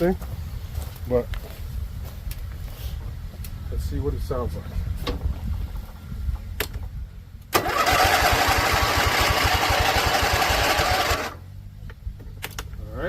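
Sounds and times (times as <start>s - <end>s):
starter cranking engine: 7.5s - 11.4s.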